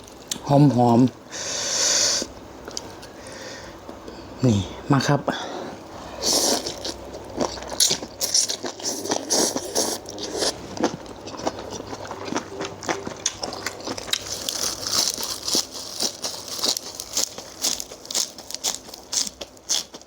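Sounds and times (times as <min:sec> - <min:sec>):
person chewing crunchy food: 0:06.0 - 0:20.0.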